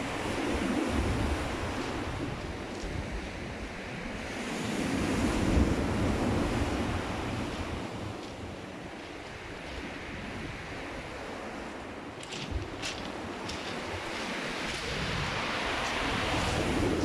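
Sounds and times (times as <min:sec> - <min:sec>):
wind buffeting microphone: 0:00.0 - 0:17.0
surf breaking on beach: 0:13.2 - 0:17.0.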